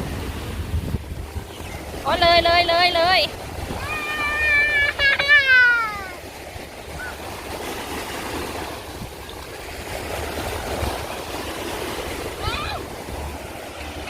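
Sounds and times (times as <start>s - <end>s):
wind rumble on microphone: 0.0s - 5.1s, 6.4s - 14.0s
small waves on sand beach: 0.0s - 14.0s
person exclaiming: 3.8s - 6.2s.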